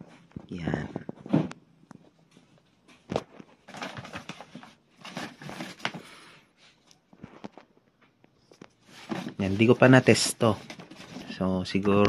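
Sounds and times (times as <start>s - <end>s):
packaging rustling with clicks: 3.0s - 6.2s.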